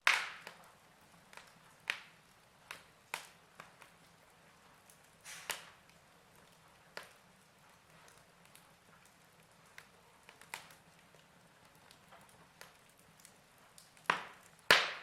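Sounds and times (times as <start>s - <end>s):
faint steady hiss: 0.0s - 15.0s
fire crackling: 0.0s - 15.0s.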